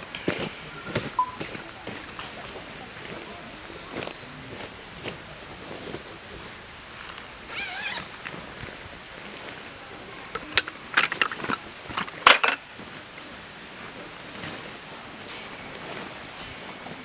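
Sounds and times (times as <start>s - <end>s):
zipper being pulled: 7.5s - 8.8s.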